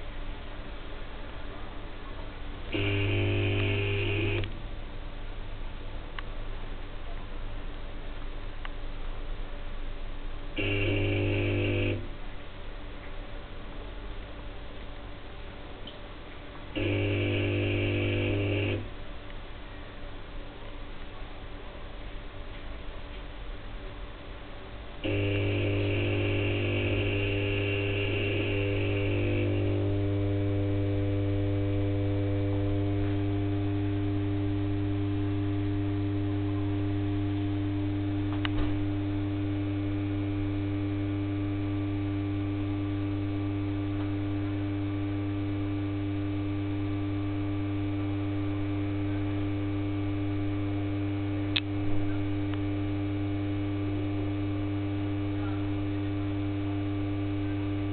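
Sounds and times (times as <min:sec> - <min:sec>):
lamp ballast mains hum: 0:02.6 - 0:04.9, 0:10.4 - 0:13.2, 0:14.2 - 0:19.5, 0:24.1 - 0:57.9
high buzz: 0:02.7 - 0:04.5, 0:10.6 - 0:12.1, 0:16.8 - 0:18.9, 0:25.0 - 0:57.9.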